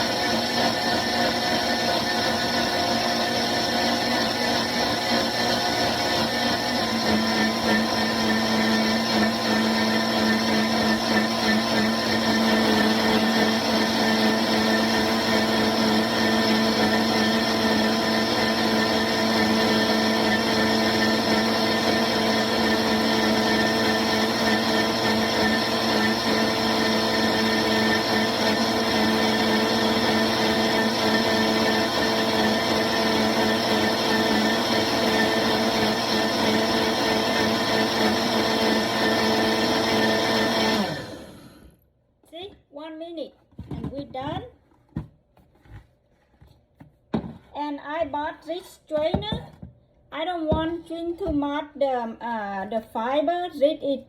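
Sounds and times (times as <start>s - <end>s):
blender motor humming: 0.0s - 41.8s.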